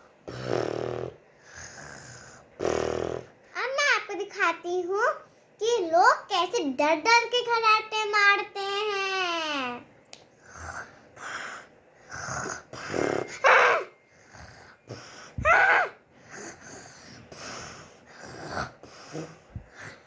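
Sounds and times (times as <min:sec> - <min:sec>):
girl imitating snoring: 0:00.3 - 0:03.3, 0:10.4 - 0:11.3, 0:12.1 - 0:16.8, 0:17.4 - 0:20.0.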